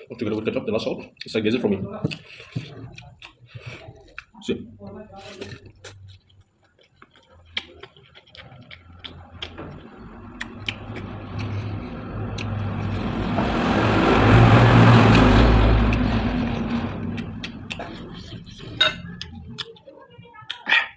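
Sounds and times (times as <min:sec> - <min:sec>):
vehicle passing by: 0:08.9 - 0:19.4.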